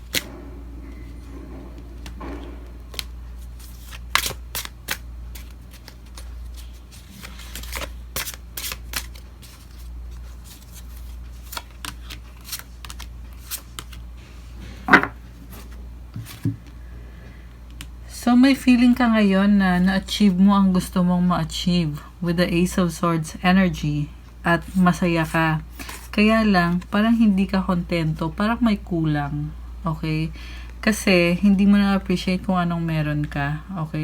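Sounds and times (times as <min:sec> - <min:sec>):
cards being shuffled: 0:00.0 - 0:00.4, 0:01.0 - 0:14.0, 0:14.9 - 0:16.6
low steady hum: 0:00.0 - 0:34.0.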